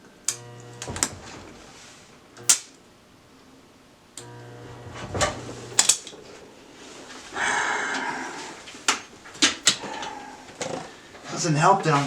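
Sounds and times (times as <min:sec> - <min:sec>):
welding rod snapping: 0:00.0 - 0:01.7, 0:02.3 - 0:02.8, 0:04.2 - 0:04.4, 0:05.1 - 0:06.4, 0:08.6 - 0:09.9
welding arc buzzing crackle: 0:00.0 - 0:07.4, 0:08.4 - 0:11.0.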